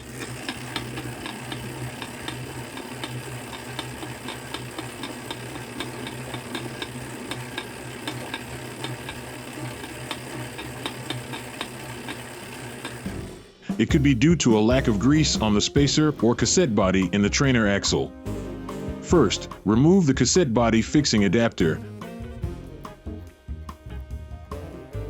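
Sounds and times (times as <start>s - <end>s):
bike trainer axle cracking clicks: 0.0s - 13.1s
low running hum: 0.0s - 14.0s
man talking: 13.7s - 18.2s, 19.0s - 21.9s.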